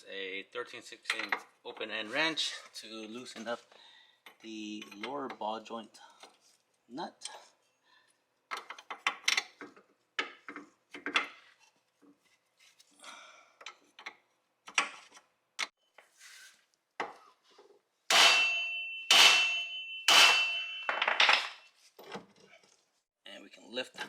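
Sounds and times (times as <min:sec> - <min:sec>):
loud ringing metal strikes: 0:18.1 - 0:21.0
wrench clinking on metal: 0:18.1 - 0:21.7.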